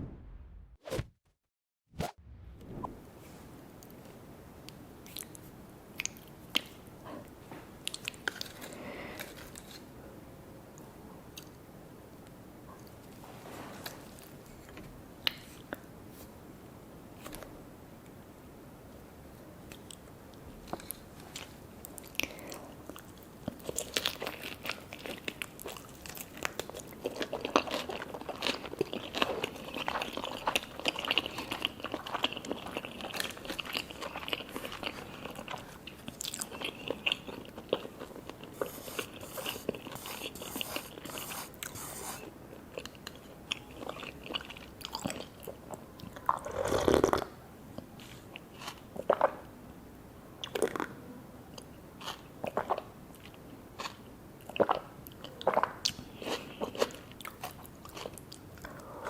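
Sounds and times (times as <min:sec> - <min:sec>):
crisp chewing and crunching: 0:07.8 - 0:09.9, 0:20.6 - 0:49.4, 0:51.6 - 0:58.8.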